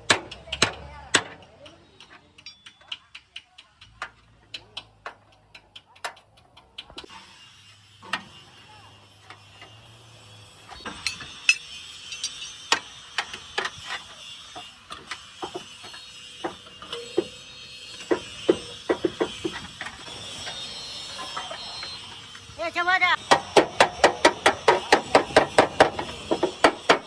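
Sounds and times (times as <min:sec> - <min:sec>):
workshop tools tapping and clicking: 0:00.0 - 0:07.1, 0:10.7 - 0:20.6, 0:23.2 - 0:27.0.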